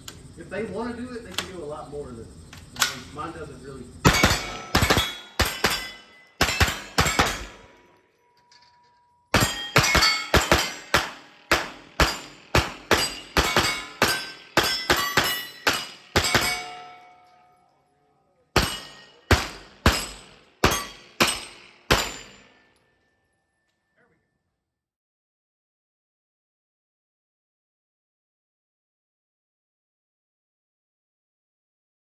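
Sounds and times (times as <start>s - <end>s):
bullets ringing on steel targets: 4.0s - 17.8s, 18.5s - 23.1s
rapid gunshots: 4.1s - 7.8s, 9.4s - 17.0s, 18.6s - 22.4s.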